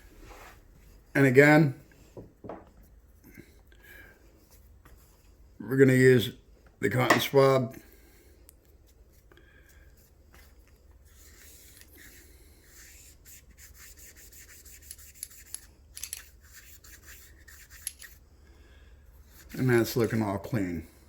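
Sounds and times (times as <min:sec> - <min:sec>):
swab scraping in a gun barrel: 0:10.4 - 0:18.2, 0:19.2 - 0:20.2.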